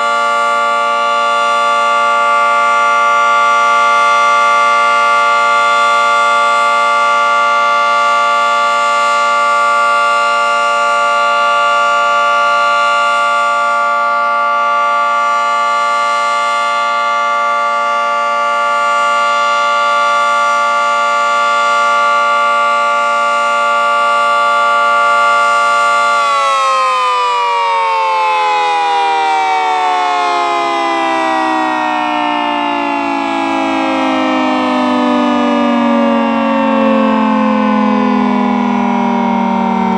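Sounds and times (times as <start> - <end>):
two-tone warning siren: 0.0 - 39.9.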